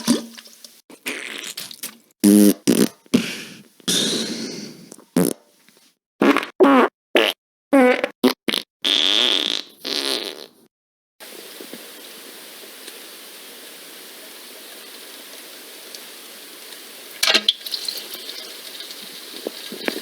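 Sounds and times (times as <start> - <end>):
fart sound effects: 1.0 - 3.3, 5.2 - 5.4, 6.2 - 10.7.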